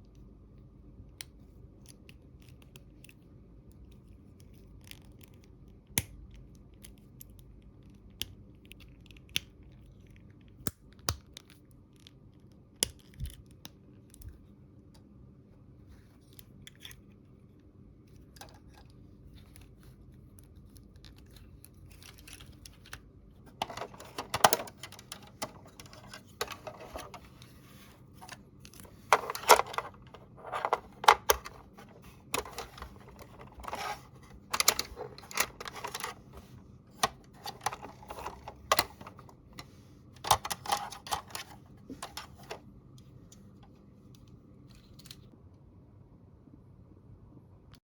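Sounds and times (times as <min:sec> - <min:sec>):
packaging rustling: 0:23.5 - 0:39.3.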